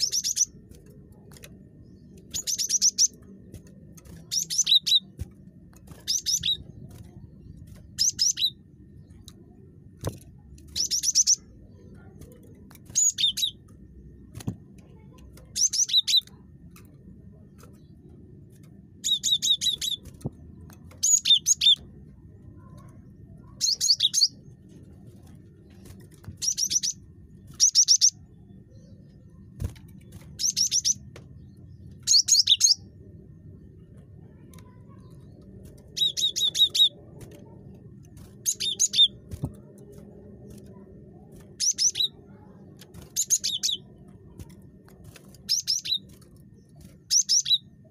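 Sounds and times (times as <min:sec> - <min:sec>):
bird chirping: 0:00.0 - 0:01.3, 0:01.9 - 0:03.5, 0:04.2 - 0:05.2, 0:05.9 - 0:09.6, 0:10.3 - 0:12.1, 0:12.9 - 0:13.7, 0:15.0 - 0:16.4, 0:19.0 - 0:21.9, 0:22.6 - 0:24.5, 0:25.7 - 0:29.5, 0:30.2 - 0:33.0, 0:34.3 - 0:37.6, 0:38.3 - 0:39.8, 0:40.7 - 0:42.5, 0:43.1 - 0:44.4, 0:45.4 - 0:47.9
faint low hum: 0:00.0 - 0:47.9.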